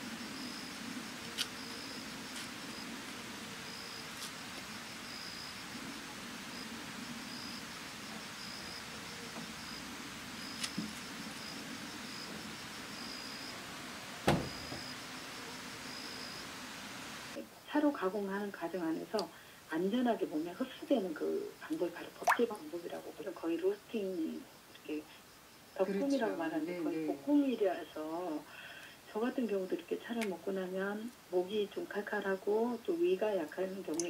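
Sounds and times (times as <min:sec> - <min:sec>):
high insect chirps: 0:00.0 - 0:17.3.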